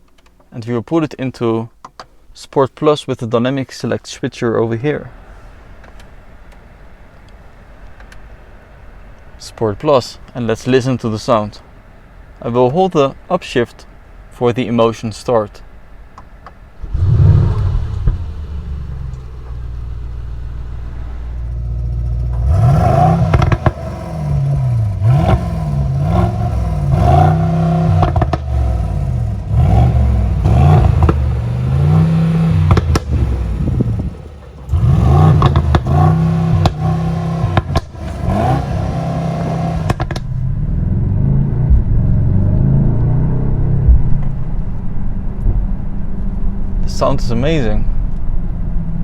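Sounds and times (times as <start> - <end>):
exhaust crackles: 15.6 - 49.0
car engine idling: 15.7 - 46.8
car engine revving: 16.8 - 46.6.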